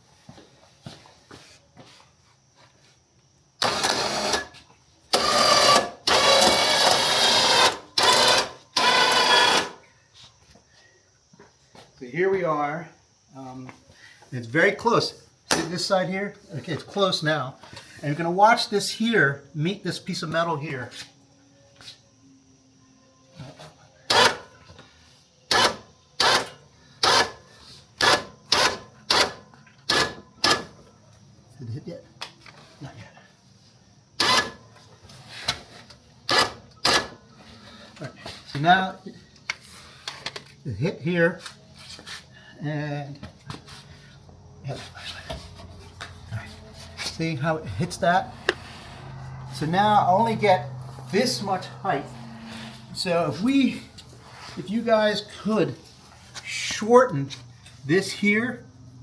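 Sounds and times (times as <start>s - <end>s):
electric winch motor whining: 3.6s - 9.8s, 34.2s - 34.6s.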